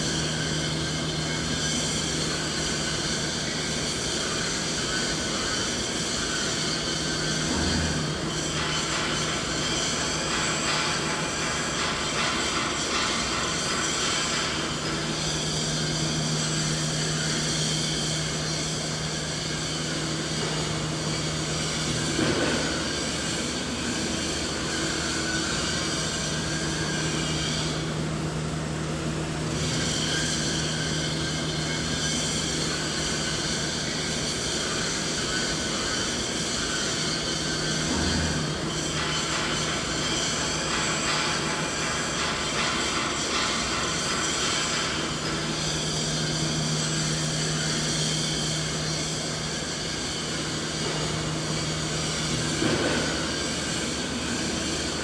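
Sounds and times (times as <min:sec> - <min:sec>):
machinery drone: 0:43.3 - 0:55.0.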